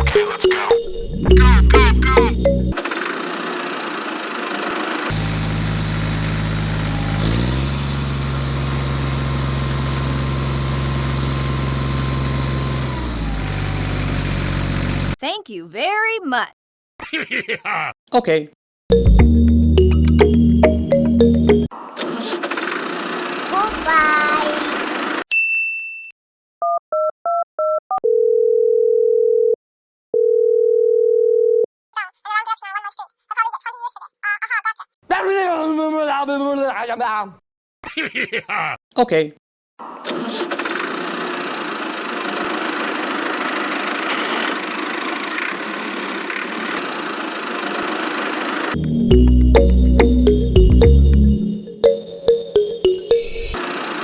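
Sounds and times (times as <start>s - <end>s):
high-pitched voice: 0.0s - 2.7s, 23.5s - 24.8s
miniature tractor engine running: 2.8s - 7.6s, 22.1s - 25.2s, 40.1s - 48.8s, 53.6s - 54.0s.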